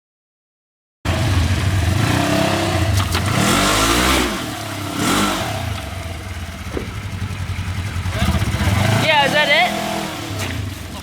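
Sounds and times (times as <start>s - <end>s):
engine revving: 1.1s - 11.0s
sharp knocks: 6.6s - 7.2s.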